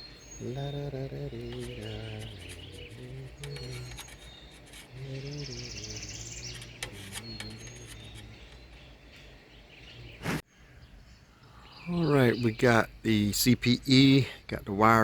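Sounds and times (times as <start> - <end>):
buzzy bird trill: 0.0 - 10.4
small birds chirping: 0.0 - 15.0.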